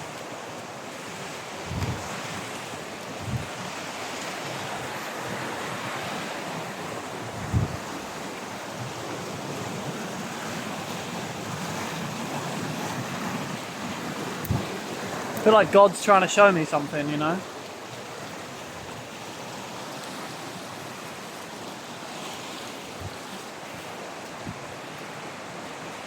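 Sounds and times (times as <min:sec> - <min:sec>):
river water flowing: 0:00.0 - 0:26.0
wind on microphone: 0:01.6 - 0:03.8, 0:06.9 - 0:08.9, 0:14.4 - 0:14.8, 0:22.9 - 0:23.3
short low thumps: 0:01.7 - 0:02.1, 0:03.2 - 0:03.5.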